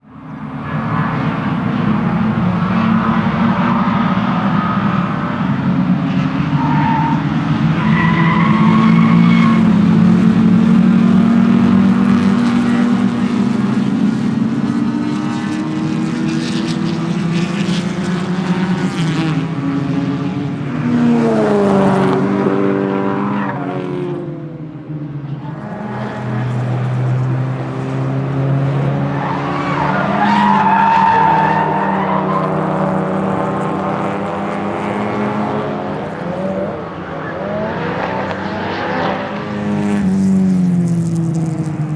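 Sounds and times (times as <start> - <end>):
race car engine revving: 0.0 - 41.9
tyres squealing: 28.9 - 33.4.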